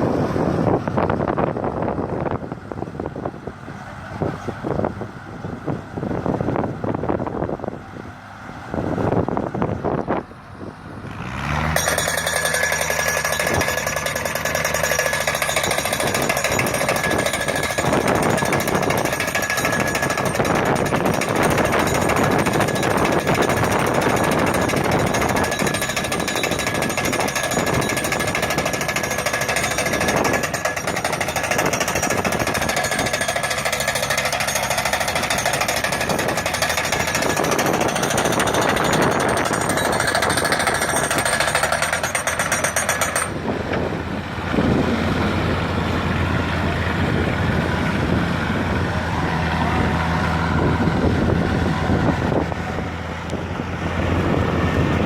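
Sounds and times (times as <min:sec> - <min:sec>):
machine hammering rattle: 0:11.8 - 0:43.8.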